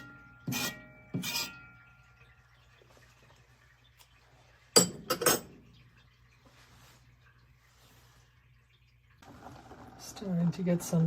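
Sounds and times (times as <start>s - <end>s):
spoon clinking on metal pot: 0.0s - 2.3s.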